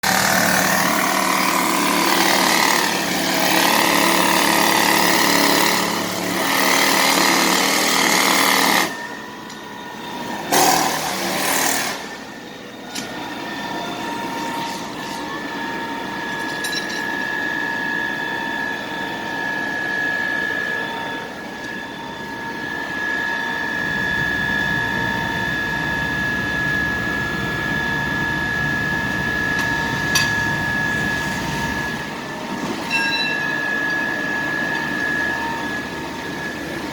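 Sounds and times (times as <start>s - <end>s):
jackhammer hammering: 0.0s - 8.9s
machine whine: 0.0s - 36.9s
street noise: 0.0s - 36.9s.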